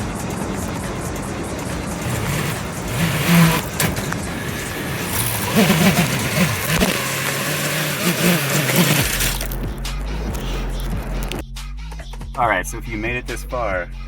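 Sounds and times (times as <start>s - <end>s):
quadcopter motors revving: 0.0s - 11.2s.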